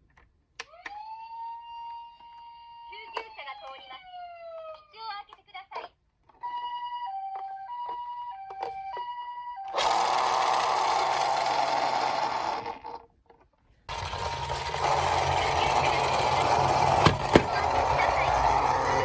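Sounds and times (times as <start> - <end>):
two-tone ambulance siren: 0.7 - 4.9, 6.4 - 9.9
rolling rattle: 10.5 - 19.0.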